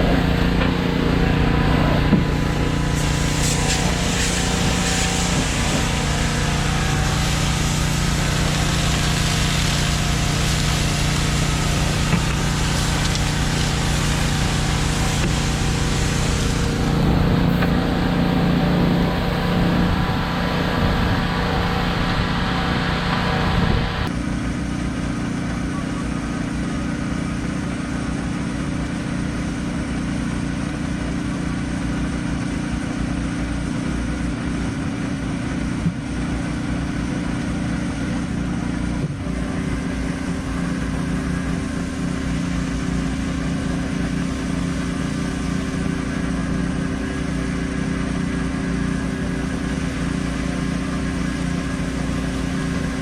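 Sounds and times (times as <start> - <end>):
water spray hiss: 0.0 - 24.0, 27.7 - 53.0
pressure washer engine drone: 0.0 - 53.0.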